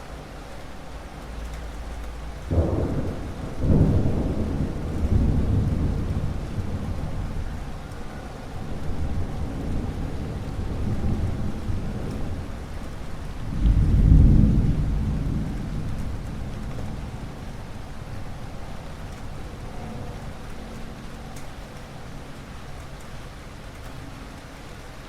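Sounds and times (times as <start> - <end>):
steady rain: 0.0 - 25.0
rolling thunder: 2.5 - 21.2.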